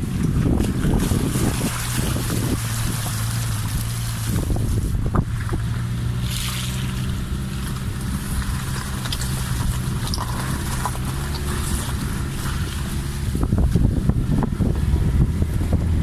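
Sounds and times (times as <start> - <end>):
rushing water: 0.0 - 5.4
low engine hum: 0.0 - 16.0
wind: 0.0 - 16.0.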